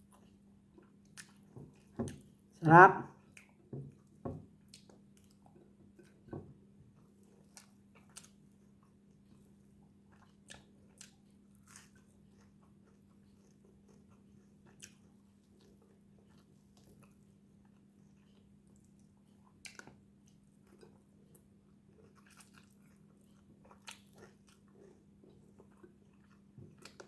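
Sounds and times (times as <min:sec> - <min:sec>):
chewing crunches: 0:07.2 - 0:19.0, 0:19.6 - 0:27.0.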